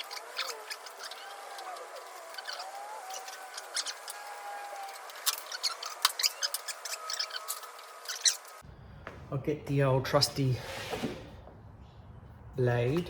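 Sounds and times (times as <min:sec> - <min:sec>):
rubber channel squeaking: 0:00.0 - 0:08.6.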